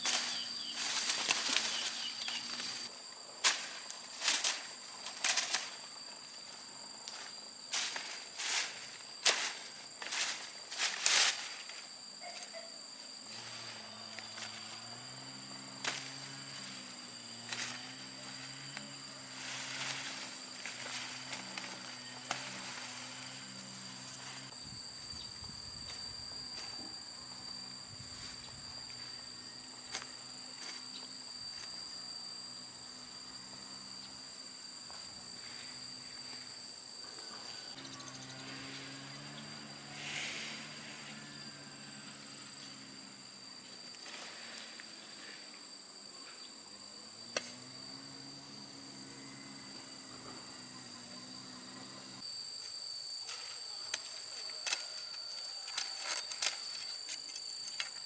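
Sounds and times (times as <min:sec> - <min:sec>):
insects trilling: 0:00.0 - 0:58.0.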